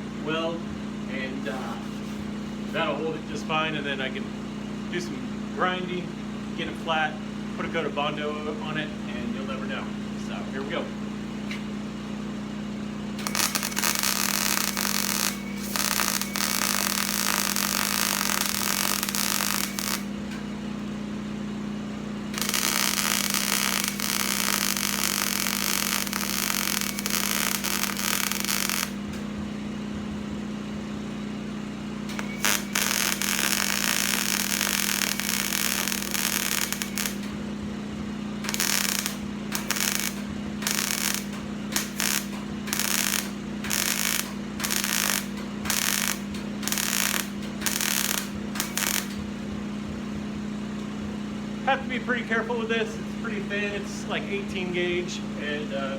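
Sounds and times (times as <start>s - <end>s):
arc welding crackling hiss: 13.2s - 20.2s, 22.4s - 29.2s, 32.1s - 37.4s, 38.4s - 49.3s.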